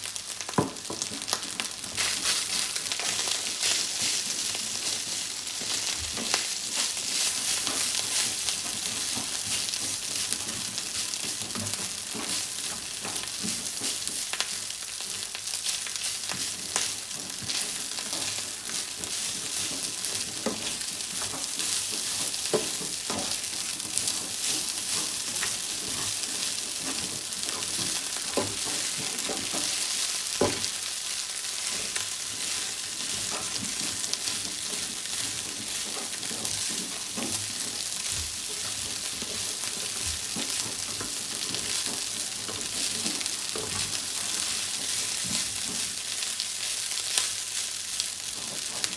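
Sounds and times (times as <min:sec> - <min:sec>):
rice sizzling in a hot pan: 0:00.0 - 0:48.9
spatula knocking and scraping pan: 0:00.6 - 0:48.9.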